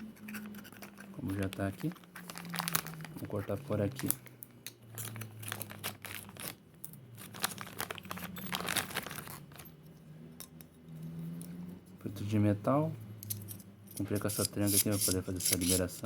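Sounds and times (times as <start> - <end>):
plastic packaging crinkling: 0.0 - 9.7.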